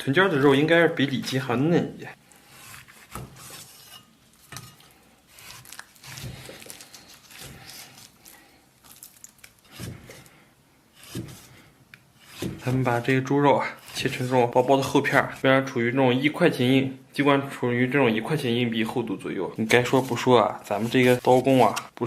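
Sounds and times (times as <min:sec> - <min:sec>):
knife rubbing and scraping: 0:02.3 - 0:08.2, 0:09.6 - 0:15.7, 0:19.6 - 0:21.9.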